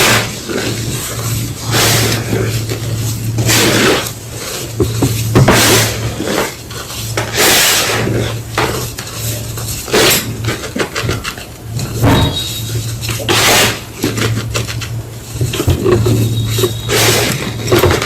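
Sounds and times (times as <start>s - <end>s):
steady low hum: 11.4s - 18.0s.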